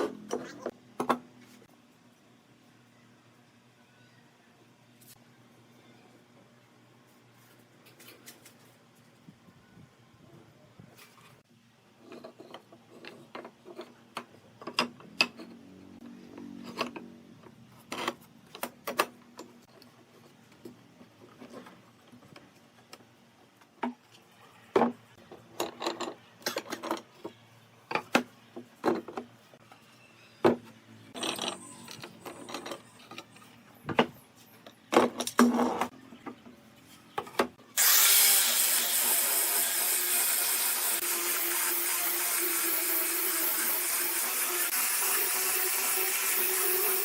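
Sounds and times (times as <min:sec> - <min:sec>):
workshop machinery hissing: 0:37.7 - 0:47.0.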